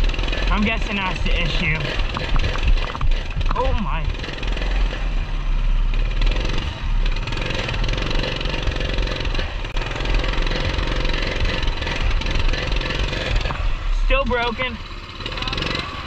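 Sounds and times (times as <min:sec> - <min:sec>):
small engine running under load: 0:00.0 - 0:05.2, 0:05.8 - 0:13.7, 0:14.4 - 0:16.0.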